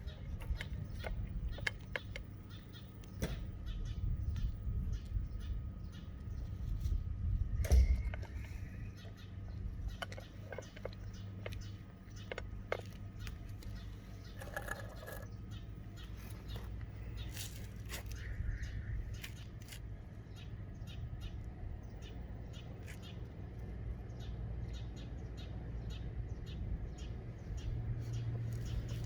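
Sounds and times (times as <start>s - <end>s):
cat crunching food: 0.2s - 2.4s, 9.9s - 15.3s.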